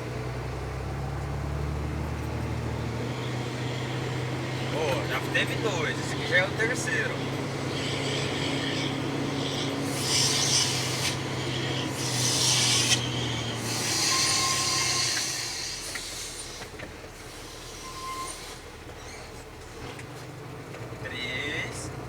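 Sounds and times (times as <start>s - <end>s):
truck diesel engine drone: 0.0s - 22.0s
air brakes hissing: 2.6s - 19.8s.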